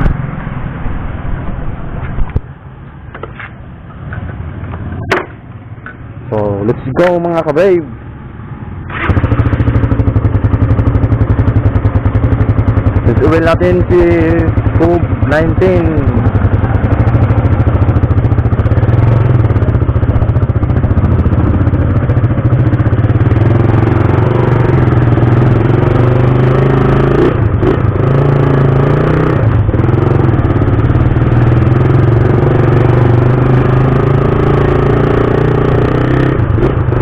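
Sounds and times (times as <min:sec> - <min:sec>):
motorcycle engine running: 0:08.9 - 0:37.0.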